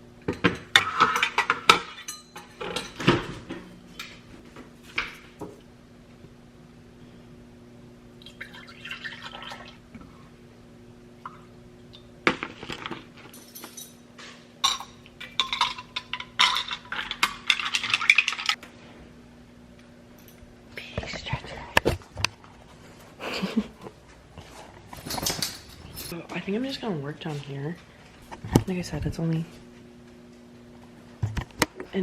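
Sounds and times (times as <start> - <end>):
steady low hum: 0.0 - 32.0
dishes and cutlery clinking: 0.3 - 3.6, 14.6 - 18.6, 25.0 - 26.2
liquid being poured: 8.2 - 9.8.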